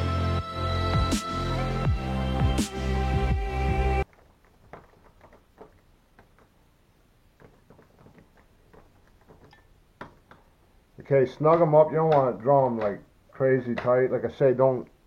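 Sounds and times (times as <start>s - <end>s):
background music: 0.0s - 4.1s.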